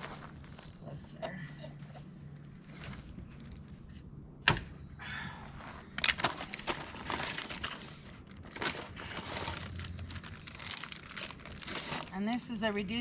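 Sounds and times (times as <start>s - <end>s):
clicks and rustling of parts: 5.8s - 12.4s.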